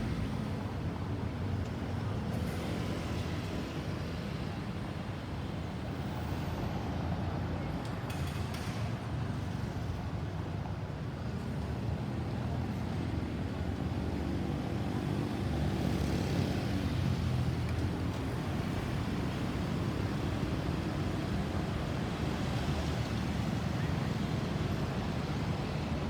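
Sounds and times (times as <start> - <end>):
road traffic rumble: 0.0 - 3.8, 14.4 - 26.0.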